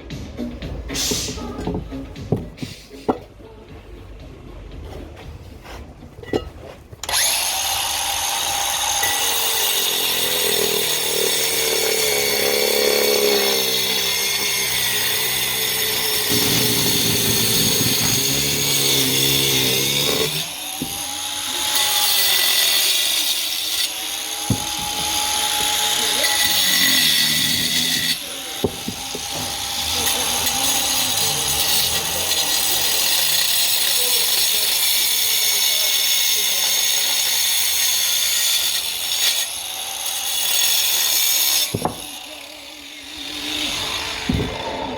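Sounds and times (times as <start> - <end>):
power saw cutting brick: 6.4 - 44.9.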